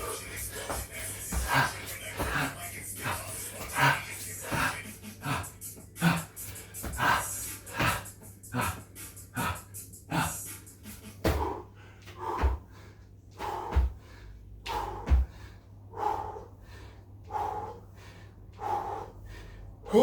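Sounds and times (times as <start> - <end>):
man breathing hard: 0.0 - 20.0
dull thumps: 11.2 - 11.6.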